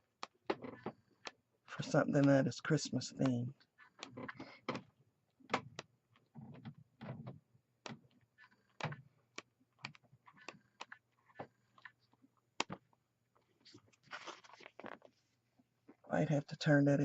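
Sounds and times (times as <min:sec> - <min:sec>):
paper pages flipping: 0:13.5 - 0:15.3.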